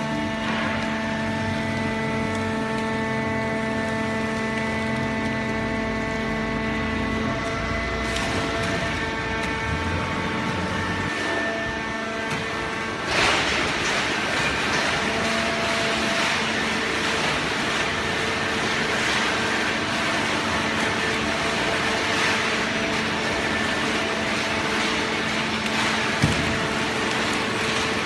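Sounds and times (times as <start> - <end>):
paper baler machine hum: 0.0 - 28.0.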